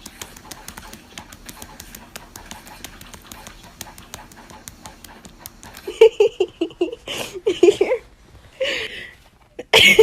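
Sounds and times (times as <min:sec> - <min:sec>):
dog panting: 0:00.0 - 0:06.0.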